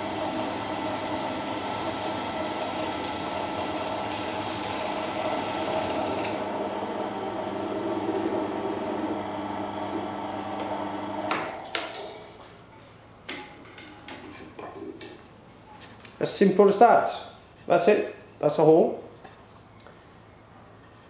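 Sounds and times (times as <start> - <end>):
pillar drill motor humming: 0.0 - 11.6.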